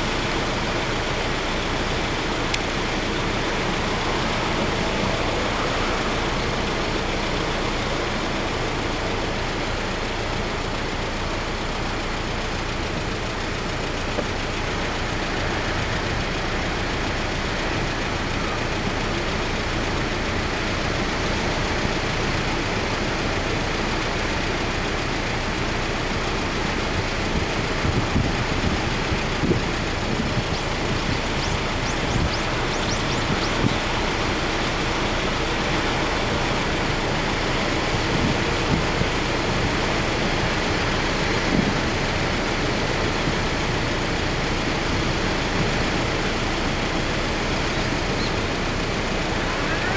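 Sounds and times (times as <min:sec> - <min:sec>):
strong wind: 0:27.3 - 0:43.4
wind buffeting microphone: 0:27.4 - 0:36.0.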